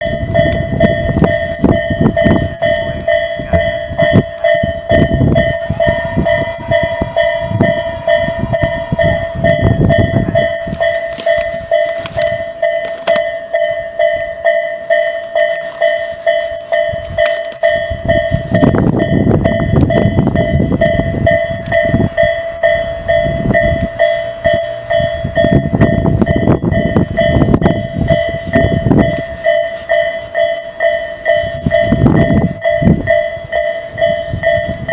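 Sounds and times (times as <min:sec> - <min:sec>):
level-crossing bell dinging: 0:00.0 - 0:34.9
trains clattering and rumbling: 0:00.0 - 0:34.9
train horn: 0:05.4 - 0:10.7.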